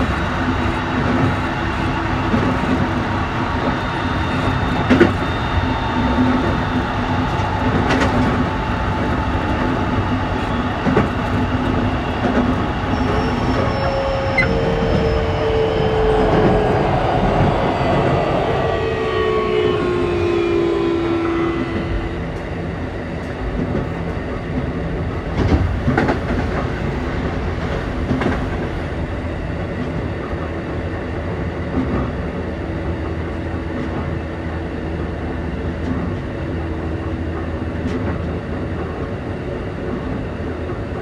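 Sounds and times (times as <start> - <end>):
train running noise: 0.0 - 41.0
traction motor whine: 3.7 - 23.4.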